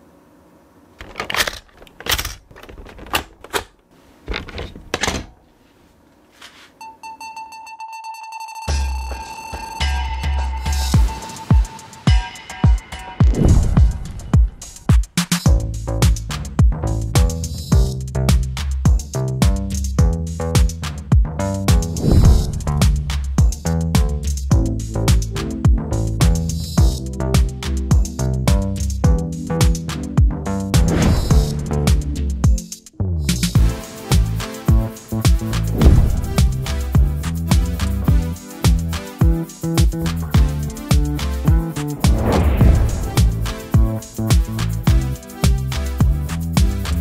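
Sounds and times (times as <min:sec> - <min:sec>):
electronic music: 0:07.2 - 0:15.0, 0:21.5 - 0:47.0.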